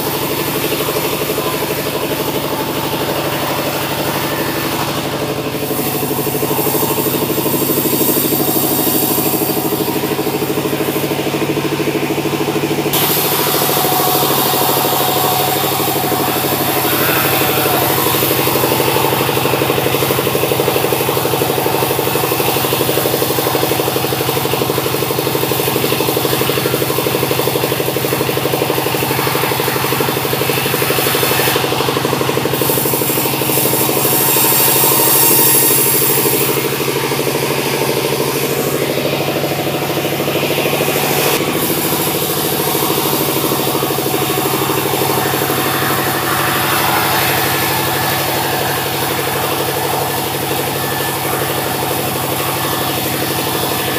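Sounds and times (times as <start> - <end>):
machinery engine drone: 0.0 - 53.9
hiss: 2.2 - 11.2, 13.0 - 38.9.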